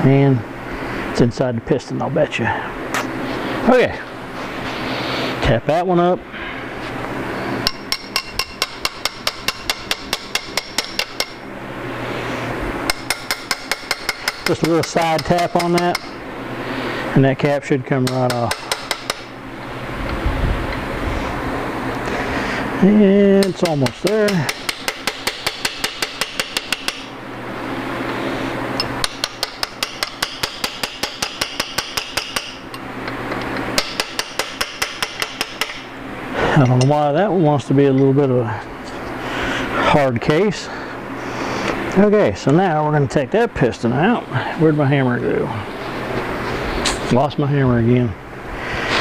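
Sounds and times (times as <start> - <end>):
hammer tapping on metal: 7.6 - 11.4, 12.9 - 16.1, 18.0 - 19.3, 23.4 - 27.1, 28.8 - 32.8, 33.8 - 35.8.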